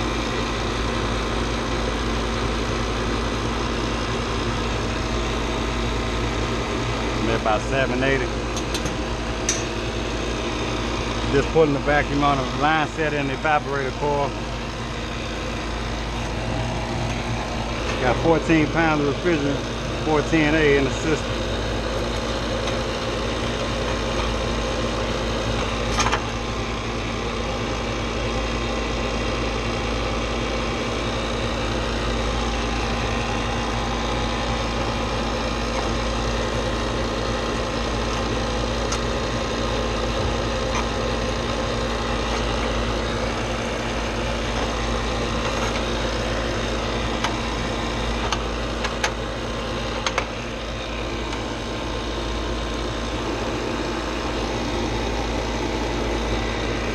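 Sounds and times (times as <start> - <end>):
vacuum pump running: 0.0 - 56.9.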